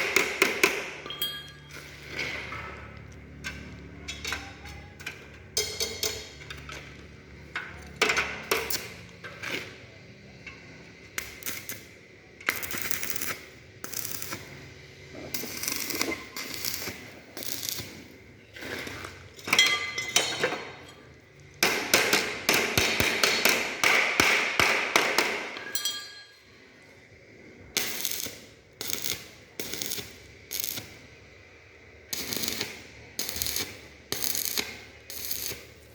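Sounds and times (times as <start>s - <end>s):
welding arc crackling: 11.0s - 19.4s, 27.7s - 35.9s.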